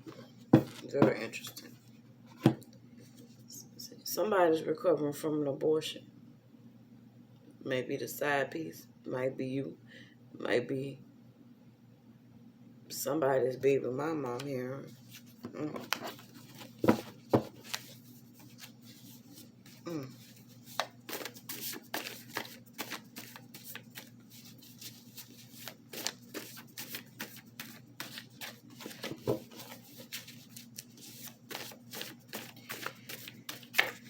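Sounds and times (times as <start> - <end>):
cards being shuffled: 15.0 - 34.0.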